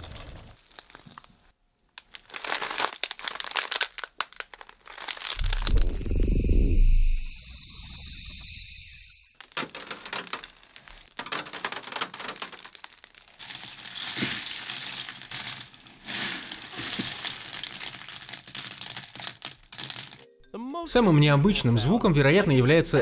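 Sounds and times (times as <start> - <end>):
crackling and crinkling clicks: 0.0 - 6.0, 9.3 - 20.3
high steady tone: 5.4 - 9.4.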